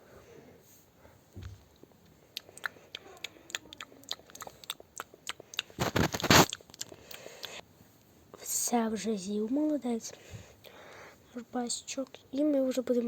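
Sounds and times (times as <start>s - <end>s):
pretend eating clicks and smacks: 1.7s - 7.6s, 11.9s - 13.0s
rustling noise: 5.8s - 6.6s.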